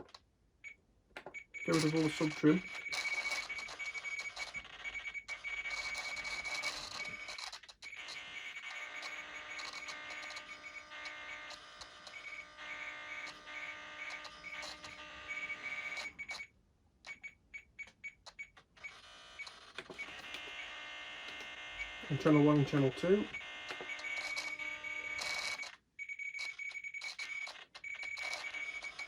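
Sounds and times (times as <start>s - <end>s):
electronic beeping tone: 1.6s - 11.4s, 12.1s - 16.5s.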